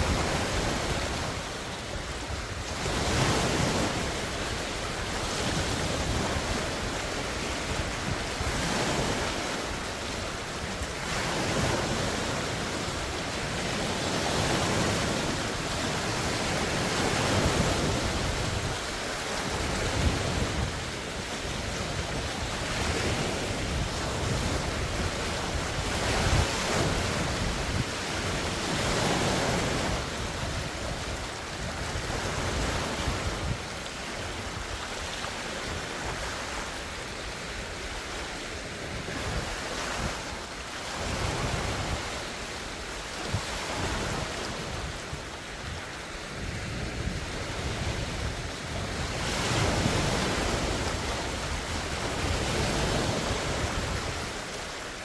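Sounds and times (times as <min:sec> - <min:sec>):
waves splashing onto shore: 0:00.0 - 0:55.0
wind rumble on microphone: 0:00.0 - 0:55.0.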